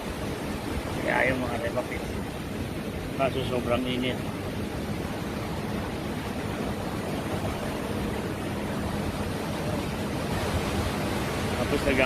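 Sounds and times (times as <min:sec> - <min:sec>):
waves rushing at shoreline: 0:00.0 - 0:12.0.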